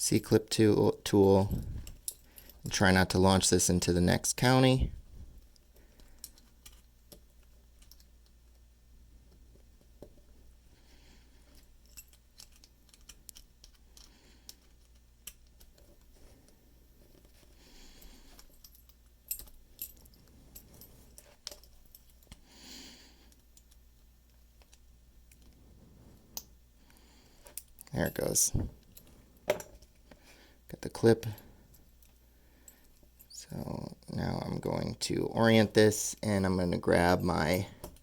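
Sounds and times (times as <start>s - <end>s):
soft rustles: 9.2s - 22.3s, 25.2s - 27.8s
small metal clicks and scrapes: 11.4s - 22.4s.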